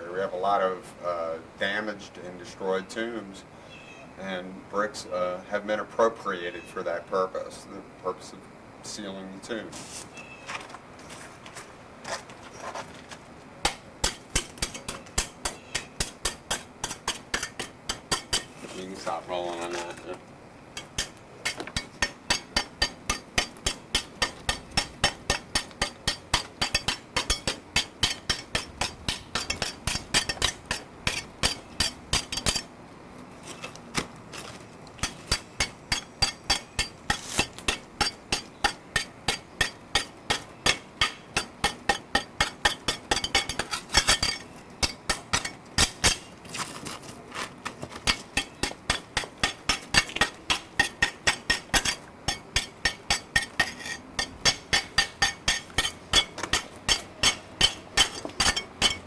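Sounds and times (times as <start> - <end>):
hand tool chipping mortar: 13.6 - 19.7, 20.8 - 32.7, 33.5 - 46.7, 47.6 - 59.0.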